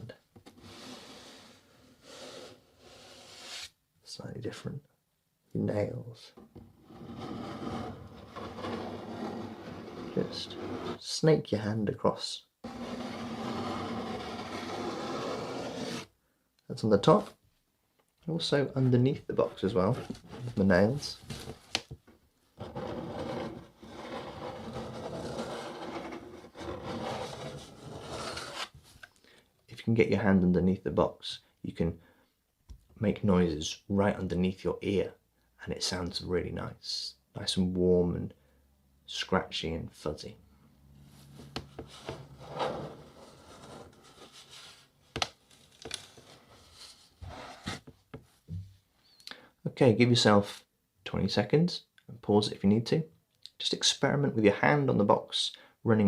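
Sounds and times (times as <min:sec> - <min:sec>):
fingernails scratching cardboard: 0:06.9 - 0:11.0, 0:12.7 - 0:16.1, 0:22.6 - 0:28.7.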